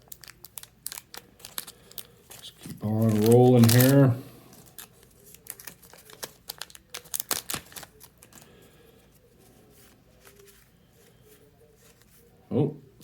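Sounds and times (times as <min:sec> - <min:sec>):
foil wrapper crinkling: 0:00.0 - 0:08.9
trading cards clicking: 0:02.3 - 0:04.0, 0:04.7 - 0:08.5.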